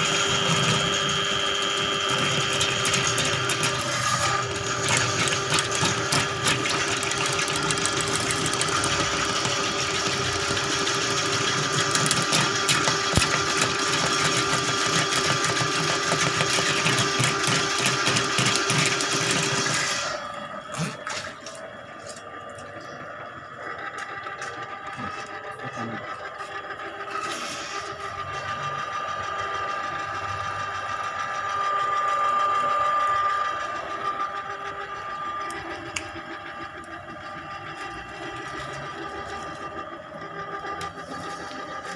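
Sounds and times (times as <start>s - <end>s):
drain-cleaning machine rattling: 0.0s - 22.1s.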